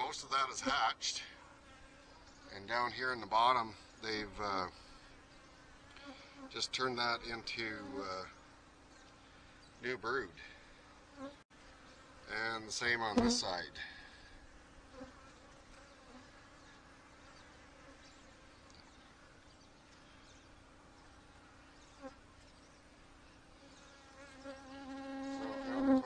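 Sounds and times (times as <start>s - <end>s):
bees buzzing: 10.0s - 26.0s.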